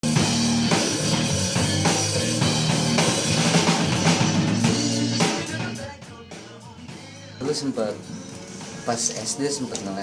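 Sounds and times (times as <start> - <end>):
rock music with drums and guitar: 0.0 - 10.0.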